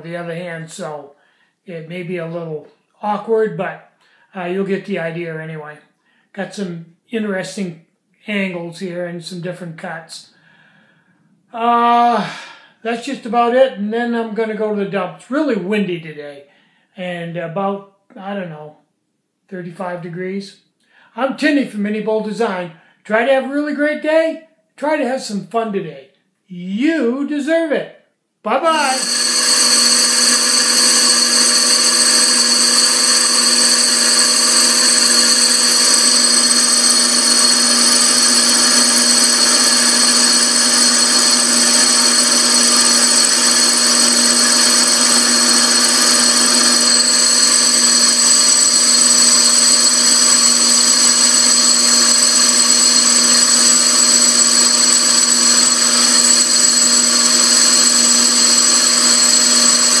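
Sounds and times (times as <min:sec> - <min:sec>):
lathe motor whining: 0:28.8 - 1:00.0.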